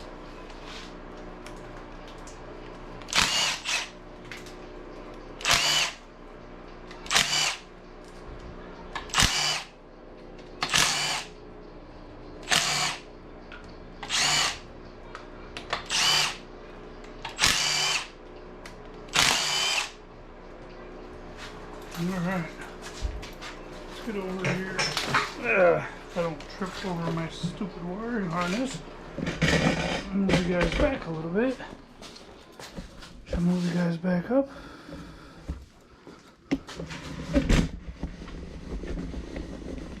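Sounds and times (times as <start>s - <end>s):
power tool whine bursts: 3.0s - 4.0s, 5.4s - 6.0s, 7.0s - 7.7s, 9.1s - 9.8s, 10.6s - 11.4s, 12.4s - 13.1s, 14.0s - 14.7s, 15.8s - 16.4s, 17.3s - 18.2s, 19.1s - 20.0s.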